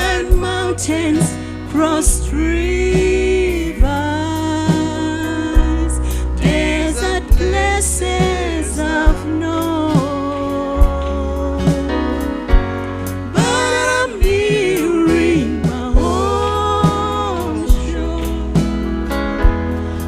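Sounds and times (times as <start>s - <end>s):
gospel worship music: 0.0s - 20.0s.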